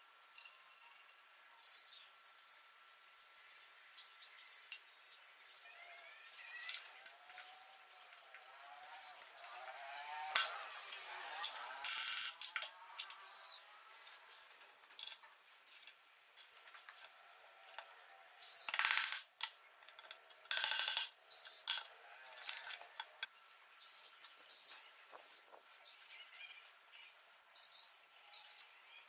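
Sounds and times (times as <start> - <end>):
metal parts clinking and scraping: 18.6 - 23.3.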